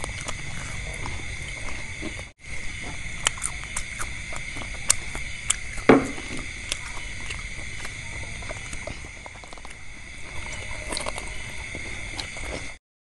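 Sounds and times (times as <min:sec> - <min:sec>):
steady high-pitched hum: 0:00.0 - 0:12.8
dull knock: 0:05.9 - 0:06.4.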